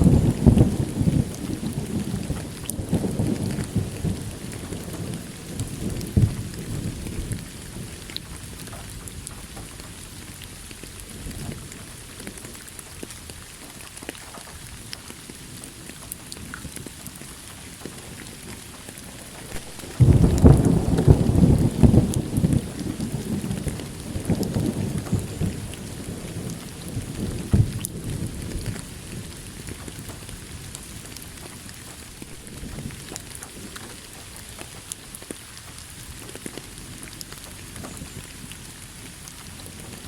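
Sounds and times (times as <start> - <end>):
loud thunderclap: 0.0 - 9.7, 19.4 - 31.5, 32.2 - 34.1
thunder rumble: 0.0 - 13.1, 17.6 - 40.0
rain hissing: 0.0 - 40.0
water drops and drips: 0.0 - 40.0.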